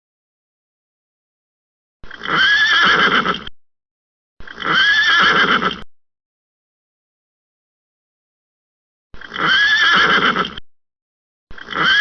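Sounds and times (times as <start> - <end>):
horse neighing: 2.1 - 3.5, 4.4 - 5.9, 9.2 - 10.6, 11.5 - 12.0.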